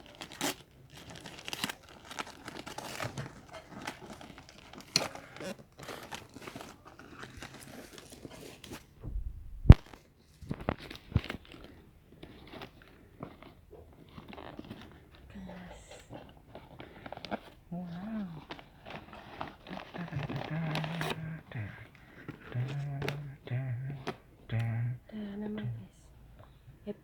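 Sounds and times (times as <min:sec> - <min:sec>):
wrapping paper tearing and crinkling: 0:00.0 - 0:08.8, 0:16.4 - 0:23.0
sharp knock: 0:09.0 - 0:09.9.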